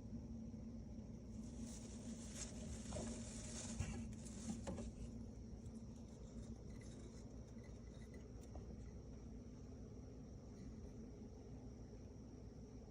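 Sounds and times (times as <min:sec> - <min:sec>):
low steady hum: 0:00.0 - 0:12.9
hamster rustling and tapping: 0:01.4 - 0:09.2.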